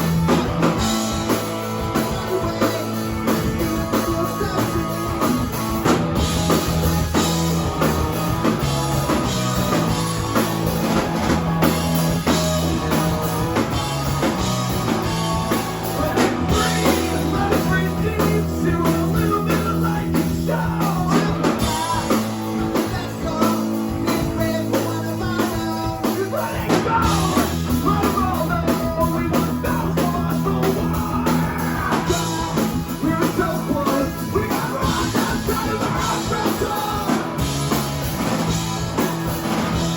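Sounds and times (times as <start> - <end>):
rock band playing live: 0.0 - 39.9
person singing: 1.2 - 5.9, 15.8 - 37.5.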